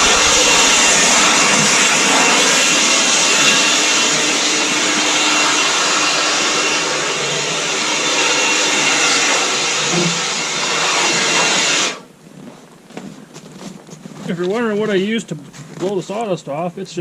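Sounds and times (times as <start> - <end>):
leaf blower running: 0.0 - 12.0.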